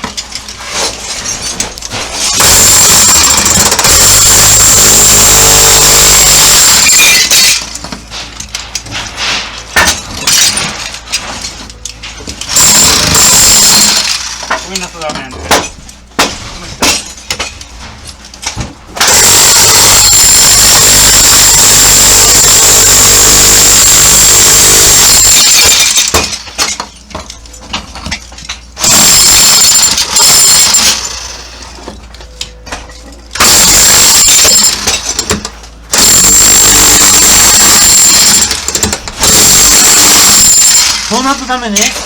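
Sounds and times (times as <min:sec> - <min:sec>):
hammer drill chipping tiles: 0:02.3 - 0:07.6, 0:12.5 - 0:14.6, 0:19.0 - 0:26.8, 0:28.8 - 0:31.4, 0:33.4 - 0:42.0.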